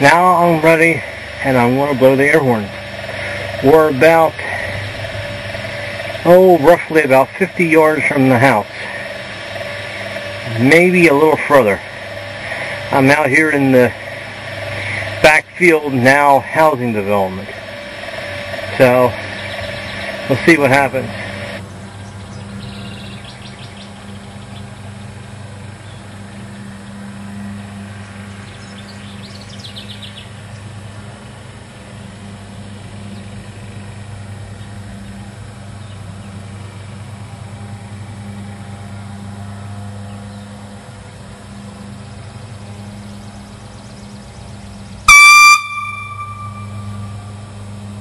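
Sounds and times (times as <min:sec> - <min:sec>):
steady low hum: 0:00.0 - 0:48.0
train air horn blast: 0:45.1 - 0:48.0.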